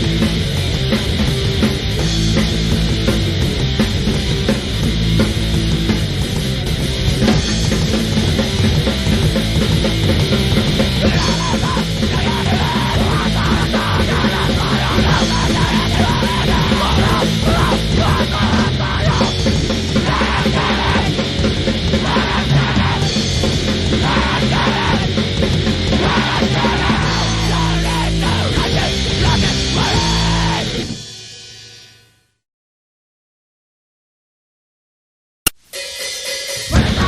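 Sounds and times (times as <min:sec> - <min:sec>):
fast drums: 0:00.0 - 0:31.6, 0:35.5 - 0:37.0
grindcore music: 0:00.0 - 0:31.9, 0:35.5 - 0:37.0
distorted guitars: 0:00.0 - 0:32.4, 0:35.5 - 0:37.0
yelled vocals: 0:07.2 - 0:31.0, 0:36.7 - 0:37.0.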